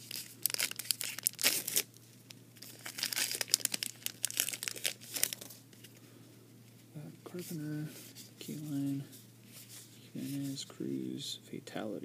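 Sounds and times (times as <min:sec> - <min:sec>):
foil wrapper crinkling and tearing: 0:00.0 - 0:02.0, 0:02.6 - 0:05.6.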